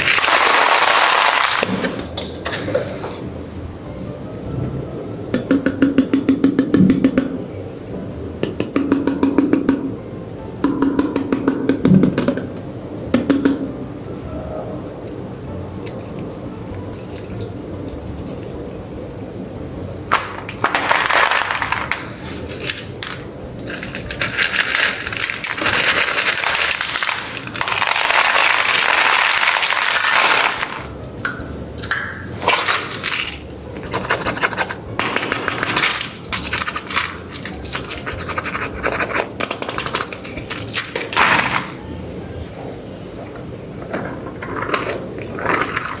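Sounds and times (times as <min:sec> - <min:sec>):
toys scratching and scraping: 0:32.4 - 0:41.1.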